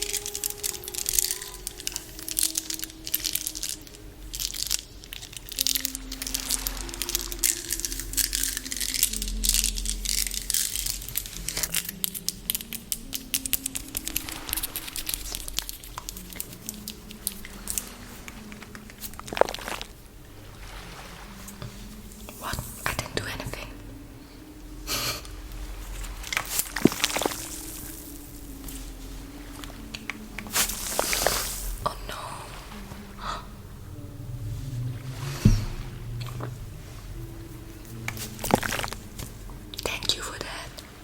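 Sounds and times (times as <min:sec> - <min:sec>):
person humming a tune: 0:00.0 - 0:19.9, 0:20.9 - 0:41.0
small object crackling and rattling: 0:00.0 - 0:19.9, 0:25.2 - 0:31.8, 0:37.8 - 0:40.8.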